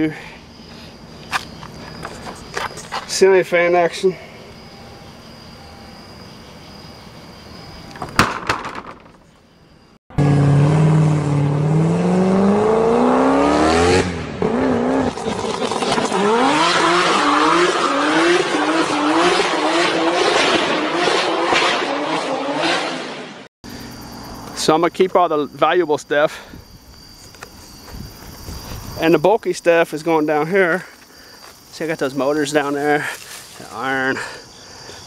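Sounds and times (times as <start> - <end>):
car engine revving: 10.1 - 23.5.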